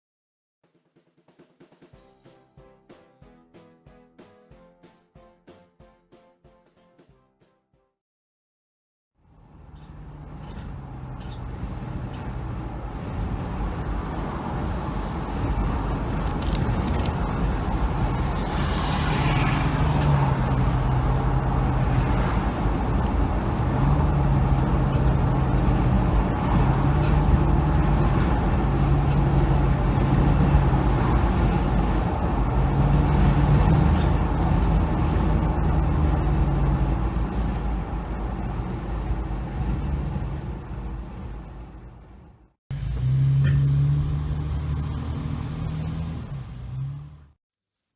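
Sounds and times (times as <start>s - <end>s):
car engine and road rumble: 9.2s - 47.4s.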